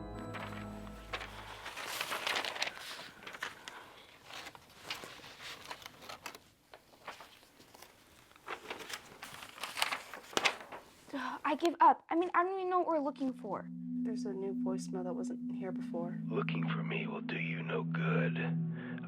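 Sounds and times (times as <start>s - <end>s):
papers rustling: 0.2s - 11.1s.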